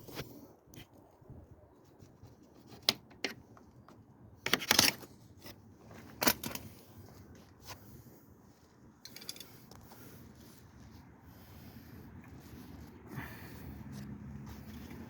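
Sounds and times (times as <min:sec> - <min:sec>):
sharp clicks and clinks: 0:09.0 - 0:09.7.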